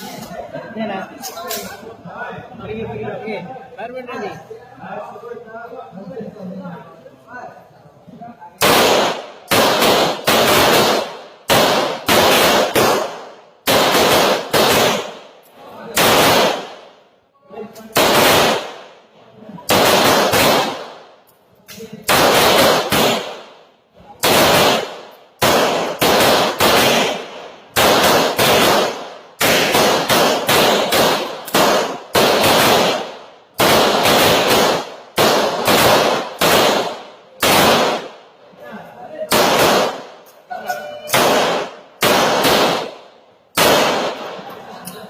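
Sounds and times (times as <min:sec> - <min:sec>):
pistol shots echoing: 0:08.6 - 0:17.0, 0:17.9 - 0:19.0, 0:19.7 - 0:21.2, 0:22.0 - 0:38.3, 0:39.3 - 0:40.3, 0:41.1 - 0:44.5.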